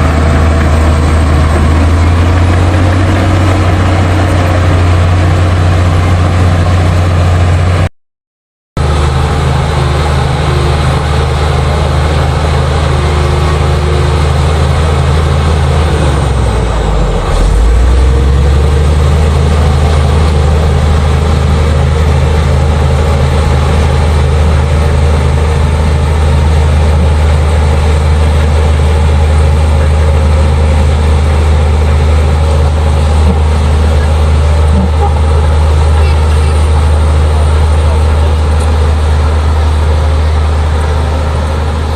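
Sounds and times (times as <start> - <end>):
bulldozer diesel engine running: 0.0 - 7.9, 8.8 - 41.9.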